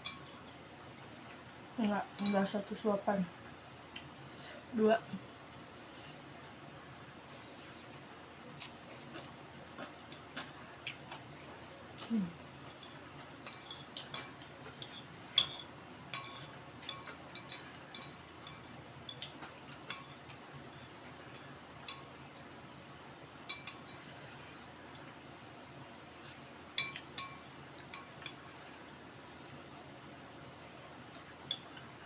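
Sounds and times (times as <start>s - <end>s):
utensil clinking against dish: 2.2s - 2.5s, 12.7s - 20.2s, 23.5s - 24.0s, 26.8s - 28.4s.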